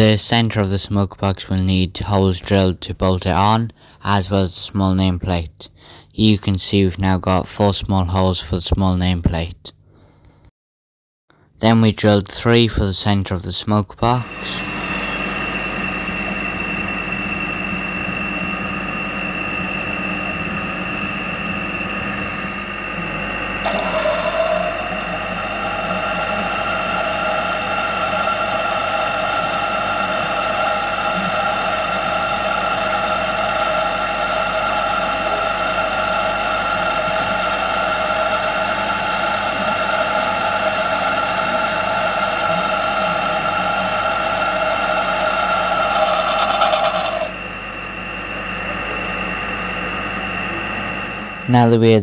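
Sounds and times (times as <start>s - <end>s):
drilling machine running: 14.1s - 52.0s.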